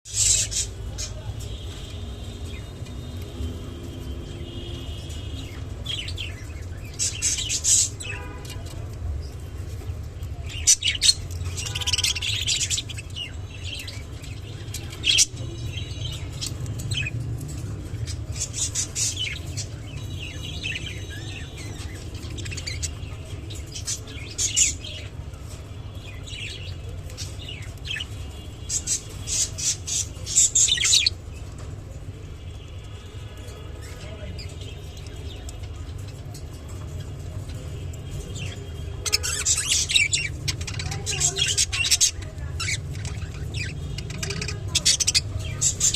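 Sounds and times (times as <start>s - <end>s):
budgerigars chirping: 4.9s - 8.2s, 26.5s - 31.2s, 38.2s - 45.9s.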